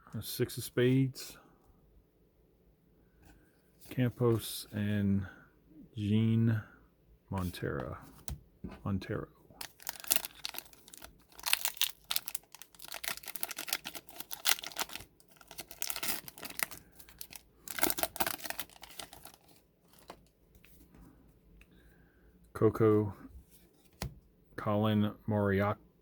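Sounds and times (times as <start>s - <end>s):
plastic wrapper tearing and crinkling: 9.6s - 20.3s.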